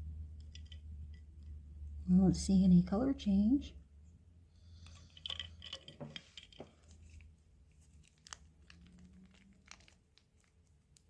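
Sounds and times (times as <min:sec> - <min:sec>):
plastic items clicking and crinkling: 0:04.8 - 0:11.0.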